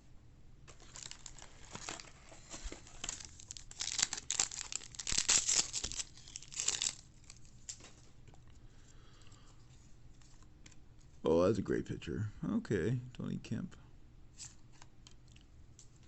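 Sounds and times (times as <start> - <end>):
foil wrapper tearing and crinkling: 0.7 - 7.9.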